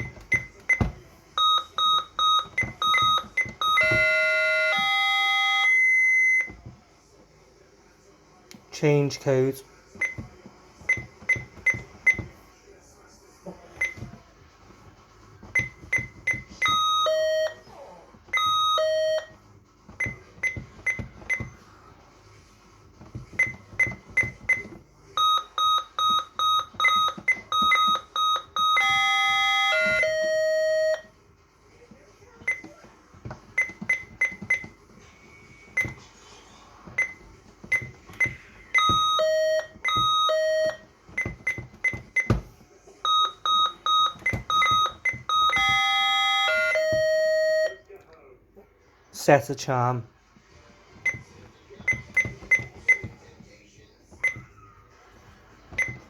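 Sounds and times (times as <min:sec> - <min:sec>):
alarm keypad beeping: 0:00.0 - 0:06.6, 0:15.5 - 0:17.6, 0:18.3 - 0:19.4, 0:23.4 - 0:31.1, 0:32.4 - 0:32.7, 0:33.6 - 0:34.8, 0:37.0 - 0:42.4, 0:43.0 - 0:47.8, 0:51.0 - 0:53.2, 0:54.2 - 0:54.5, 0:55.8 - 0:56.0.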